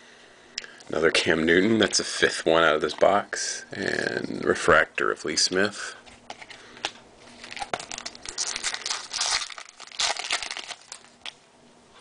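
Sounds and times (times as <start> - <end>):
packaging crinkling: 6.3 - 11.4.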